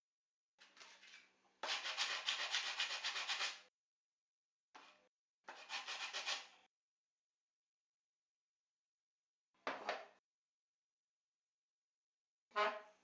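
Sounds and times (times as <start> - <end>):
sandpaper rubbing on wood: 1.7 - 3.6, 5.6 - 6.5.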